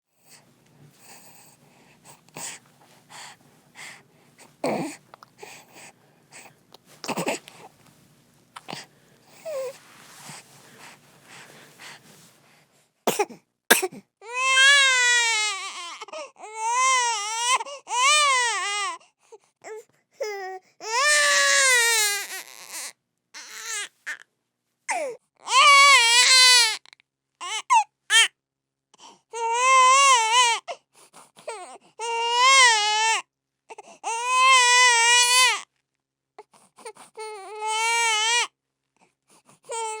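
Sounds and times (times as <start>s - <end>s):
baby crying: 4.6s - 5.0s, 7.0s - 7.5s, 13.8s - 19.0s, 20.2s - 24.2s, 24.9s - 26.8s, 27.4s - 28.3s, 29.4s - 30.6s, 31.5s - 33.2s, 34.0s - 35.6s, 37.2s - 38.5s, 39.7s - 40.0s.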